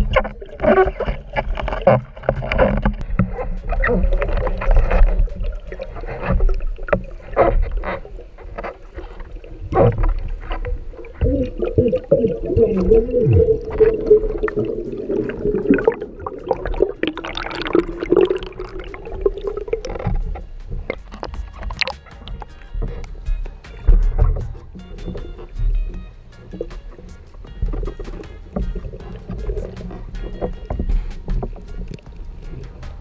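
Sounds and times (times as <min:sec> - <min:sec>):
clicks and knocks: 0:00.0 - 0:07.9
underwater rushing bubbling water: 0:00.0 - 0:23.0.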